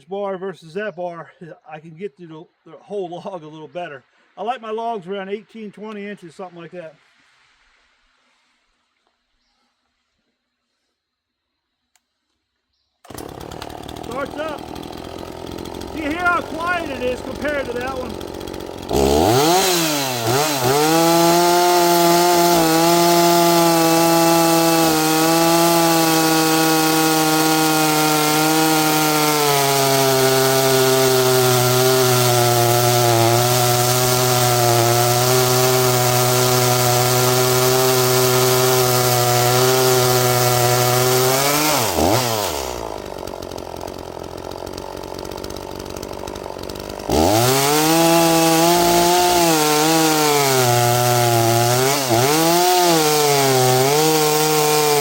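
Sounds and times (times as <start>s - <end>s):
chainsaw cutting log: 13.0s - 55.0s.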